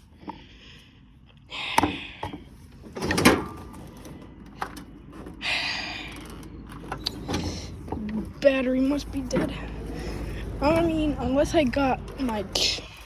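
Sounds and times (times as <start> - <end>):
clunks and knocks on mower: 1.8 - 5.4, 9.0 - 9.9.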